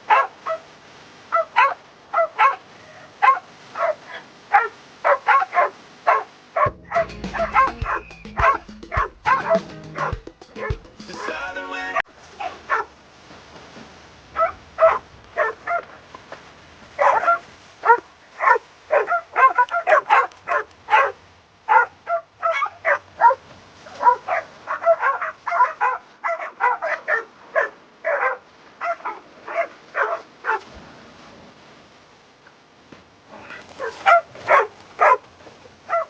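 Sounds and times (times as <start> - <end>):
dog barking excitedly: 0.0 - 0.7, 1.3 - 10.8, 12.4 - 13.0, 14.4 - 16.0, 17.0 - 30.7, 33.8 - 35.3.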